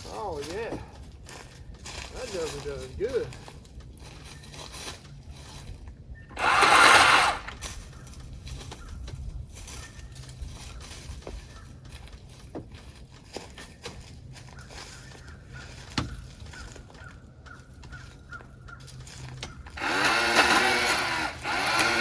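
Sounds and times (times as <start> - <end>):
light ticks and crackles: 0.0 - 6.0, 7.6 - 19.7
pole saw running: 6.3 - 7.6, 19.7 - 22.0.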